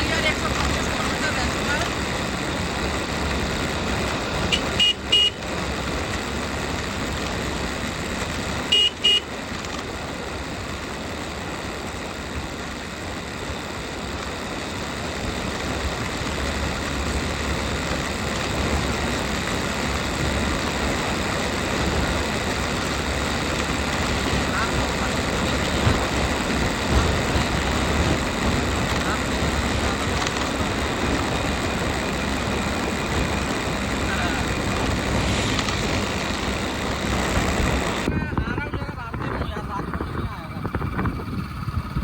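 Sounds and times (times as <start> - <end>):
motorcycle riding: 0.0 - 42.0
wind and road noise: 0.0 - 42.0
horn double beeps: 4.4 - 5.5, 8.6 - 9.4.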